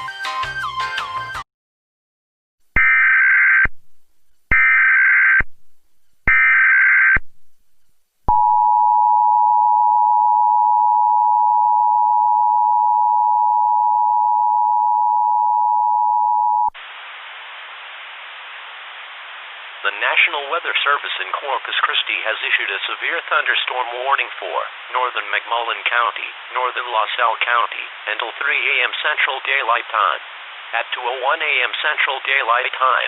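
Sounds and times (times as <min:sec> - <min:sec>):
data tone bursts: 0:06.3 - 0:07.3
steady hiss: 0:16.8 - 0:33.0.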